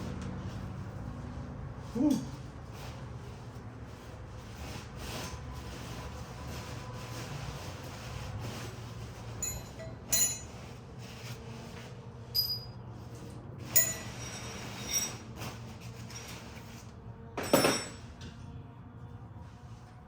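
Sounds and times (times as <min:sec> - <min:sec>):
metal parts clinking: 0:12.4 - 0:12.8.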